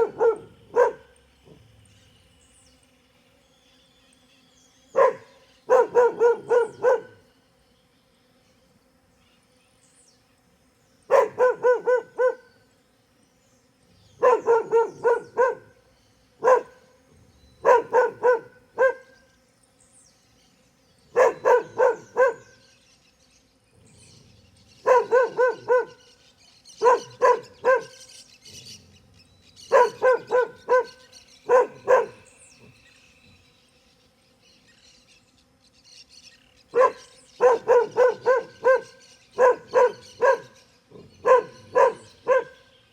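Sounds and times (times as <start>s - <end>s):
dog barking in bursts: 0.0s - 1.6s, 5.0s - 7.2s, 11.1s - 12.5s, 14.2s - 15.8s, 16.4s - 16.9s, 17.6s - 19.2s, 21.1s - 22.6s, 24.8s - 26.0s, 26.8s - 28.1s, 29.7s - 32.3s, 36.7s - 42.6s.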